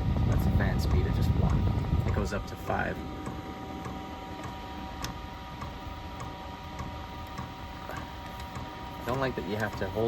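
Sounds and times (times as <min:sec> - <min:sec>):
blower fan humming: 0:00.0 - 0:10.0
fuel pump ticking: 0:00.2 - 0:10.0.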